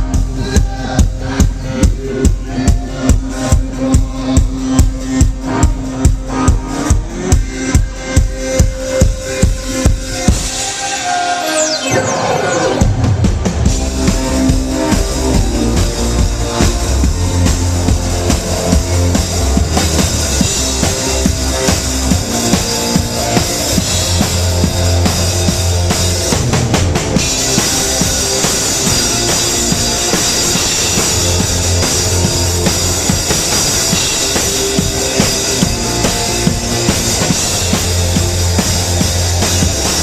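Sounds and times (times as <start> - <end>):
live rock band: 0.0 - 40.0
bass drum and snare: 12.8 - 40.0.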